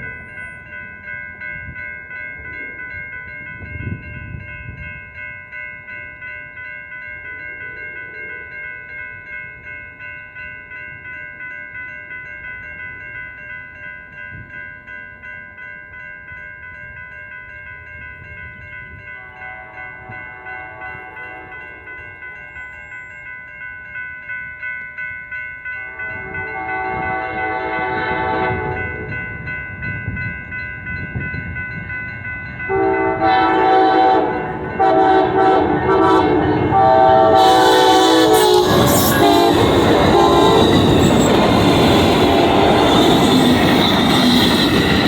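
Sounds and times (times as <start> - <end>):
crossing bell ringing: 0.0 - 45.0
train rumbling past: 25.6 - 45.0.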